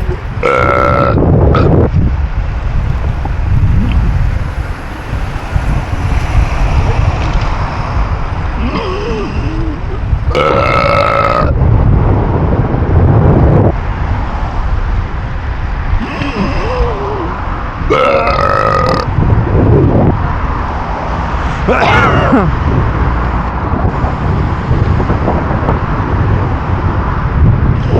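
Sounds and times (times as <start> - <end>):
man burping: 0.0 - 1.8, 8.6 - 11.6, 16.0 - 19.1, 21.7 - 22.6.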